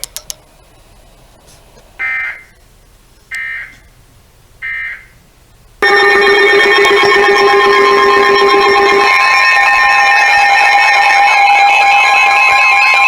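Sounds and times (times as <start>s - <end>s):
buzzy digital data tones: 5.8s - 13.0s
loud steady alert tone: 5.8s - 13.0s.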